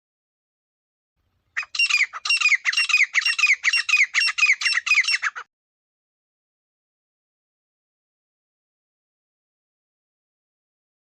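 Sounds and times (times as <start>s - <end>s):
francolin calling: 1.6s - 5.5s.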